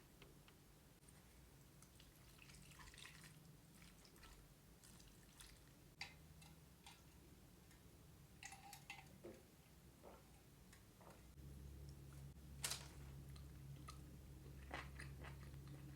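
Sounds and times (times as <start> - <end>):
wet eating sounds: 1.0 - 5.8, 11.8 - 15.9.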